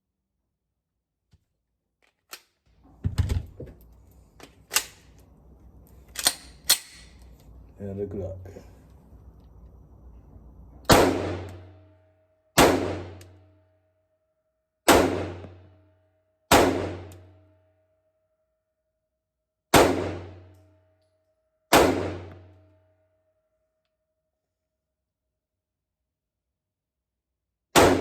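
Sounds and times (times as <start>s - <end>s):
pistol shots: 10.9s - 11.7s, 12.6s - 13.3s, 14.9s - 15.7s, 16.5s - 17.3s, 19.7s - 20.5s, 21.7s - 22.5s, 27.8s - 28.0s.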